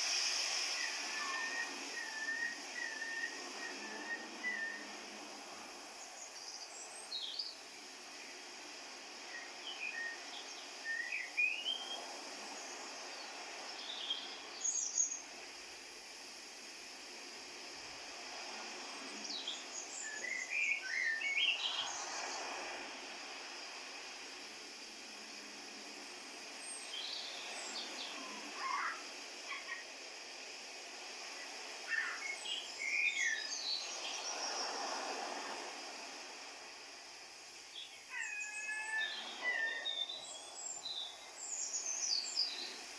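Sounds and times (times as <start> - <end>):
steady background hiss: 0.0 - 42.9
birds chirping and warbling: 31.9 - 34.4, 37.8 - 42.8.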